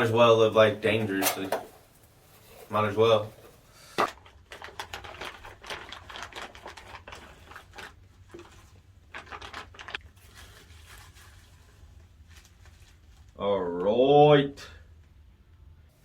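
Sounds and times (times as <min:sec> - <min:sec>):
plastic packaging crinkling: 0:01.2 - 0:13.3.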